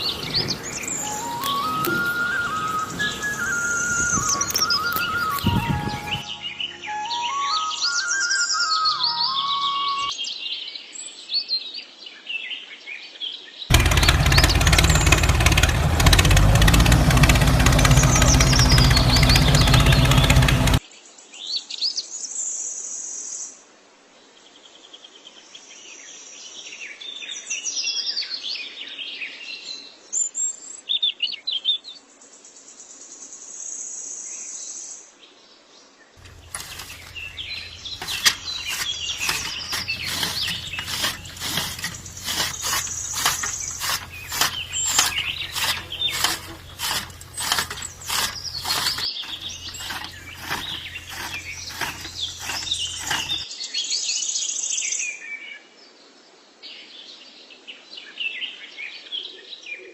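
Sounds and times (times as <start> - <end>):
birds chirping: 0.0 - 10.1, 13.7 - 20.8, 36.2 - 53.4.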